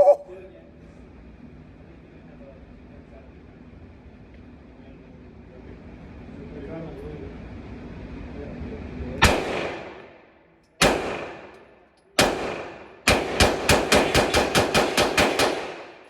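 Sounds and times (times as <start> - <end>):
pistol shots: 9.2 - 10.2, 10.8 - 16.0.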